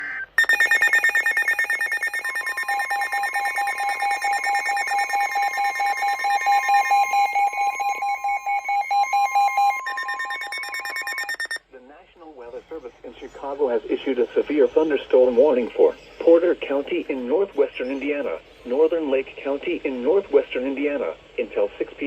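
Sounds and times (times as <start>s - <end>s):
rapid electronic beeping: 0.0s - 11.6s
steady warning alarm tone: 0.0s - 11.6s.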